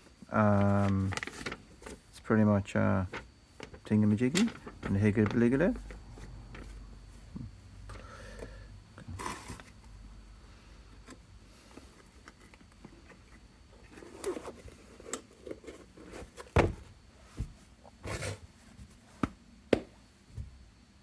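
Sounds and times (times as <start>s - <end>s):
packaging rustling: 0.4s - 2.0s, 3.1s - 6.0s.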